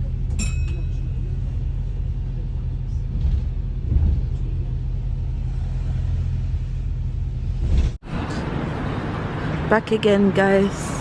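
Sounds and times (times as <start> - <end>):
bus engine rumble from inside: 0.0 - 11.0.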